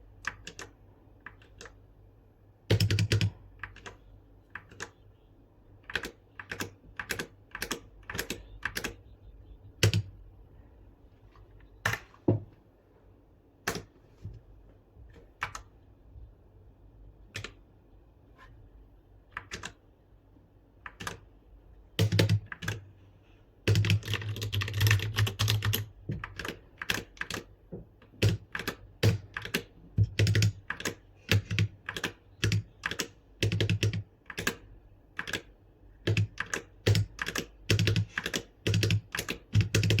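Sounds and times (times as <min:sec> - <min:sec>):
mechanical keyboard typing: 0:00.2 - 0:01.8, 0:02.7 - 0:05.0, 0:05.8 - 0:09.1, 0:09.8 - 0:10.1, 0:11.8 - 0:12.2, 0:13.6 - 0:13.9, 0:15.1 - 0:15.7, 0:17.3 - 0:17.6, 0:19.3 - 0:19.8, 0:20.8 - 0:21.3, 0:22.0 - 0:22.8, 0:23.6 - 0:40.0.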